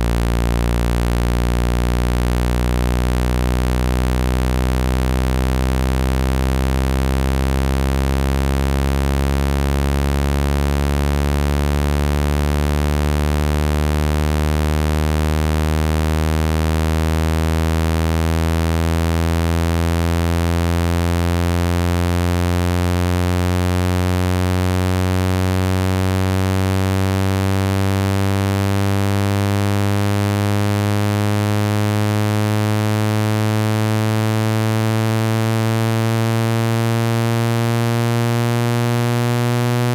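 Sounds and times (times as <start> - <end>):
low buzzy rising tone: 22.9 - 39.9.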